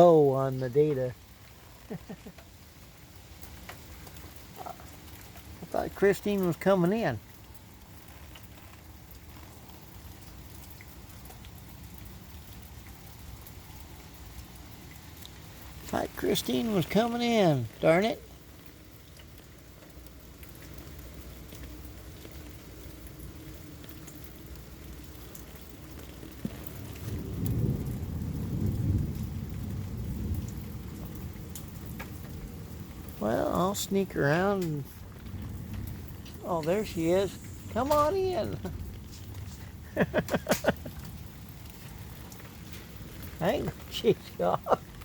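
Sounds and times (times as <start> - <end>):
heavy rain hiss: 0.0 - 45.0
raindrop ticks: 0.0 - 45.0
low rumble of thunder: 20.4 - 45.0.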